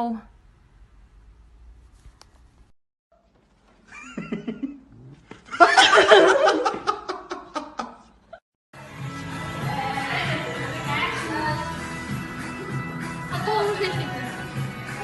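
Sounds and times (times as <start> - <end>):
loud laughter: 5.6 - 8.1
music: 8.8 - 15.0.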